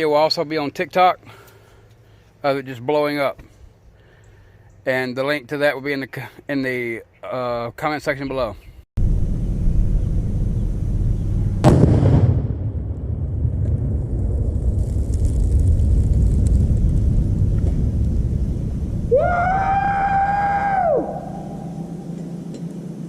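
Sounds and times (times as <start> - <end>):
explosive blast: 9.0 - 22.0
low rumble: 9.0 - 23.0
held rising and falling tone: 17.4 - 23.0.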